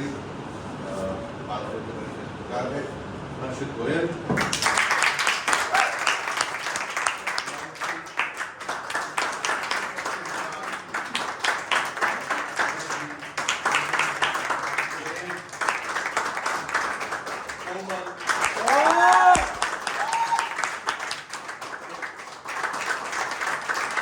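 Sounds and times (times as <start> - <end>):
audience applauding: 4.4 - 24.0.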